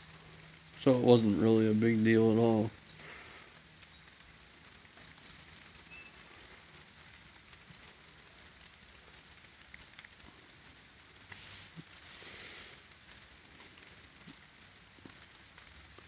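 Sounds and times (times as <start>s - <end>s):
light rain falling: 0.0s - 16.0s
high bird chirps: 4.6s - 8.5s.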